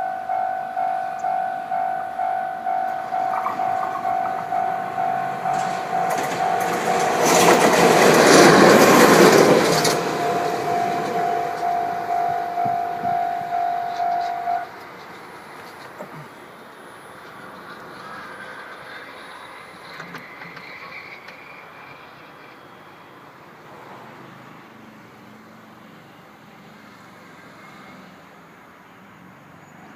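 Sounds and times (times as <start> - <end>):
level crossing warning bell: 0.0 - 14.8
diesel locomotive passing: 0.0 - 29.8.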